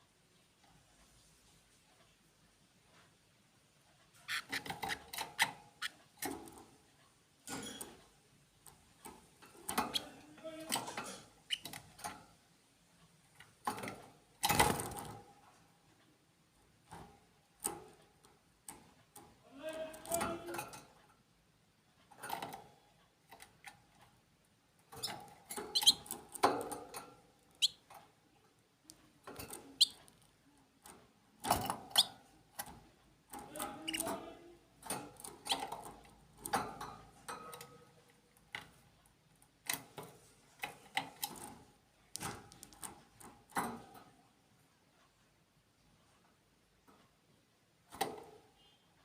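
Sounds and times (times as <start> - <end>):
small birds chirping: 4.1 - 6.2, 9.6 - 10.5, 11.4 - 12.0, 25.0 - 26.7, 27.5 - 27.9, 28.8 - 30.3, 33.5 - 34.3.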